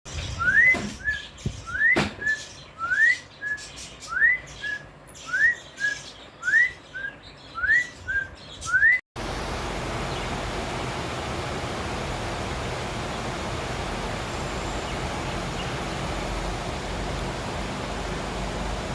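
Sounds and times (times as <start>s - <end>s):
rain hiss: 9.2s - 18.9s.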